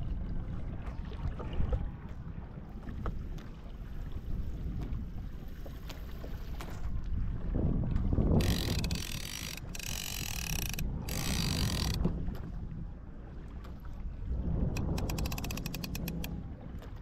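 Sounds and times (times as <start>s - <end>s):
low rumble of water: 0.0s - 17.0s
wind on microphone: 0.0s - 17.0s
fishing reel winding: 8.4s - 12.0s, 14.8s - 16.3s.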